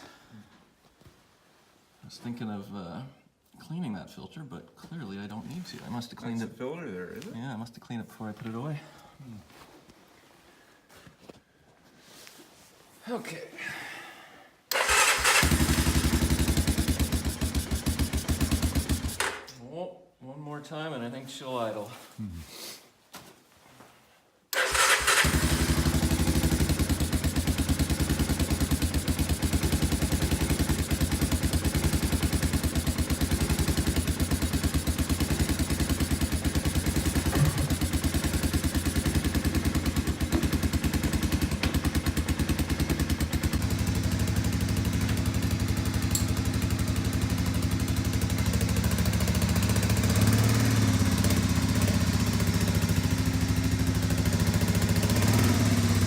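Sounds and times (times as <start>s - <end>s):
engine starting and idling fast: 14.7s - 19.5s, 24.5s - 56.0s.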